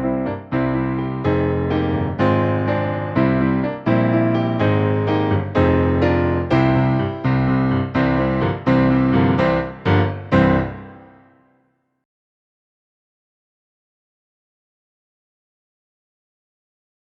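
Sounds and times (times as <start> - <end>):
piano chords: 0.0 - 11.6.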